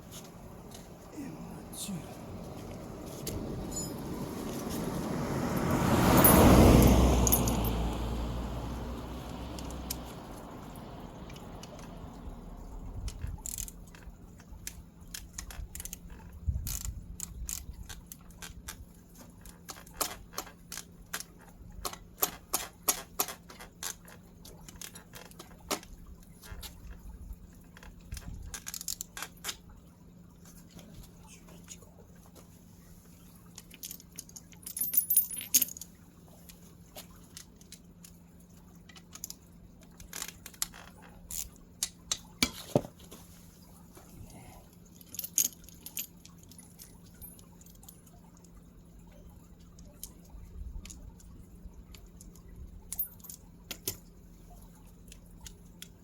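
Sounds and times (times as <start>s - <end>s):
light metallic clinks: 2.8s - 4.8s, 5.5s - 8.2s, 33.6s - 38.2s, 44.7s - 48.6s, 51.9s - 54.2s.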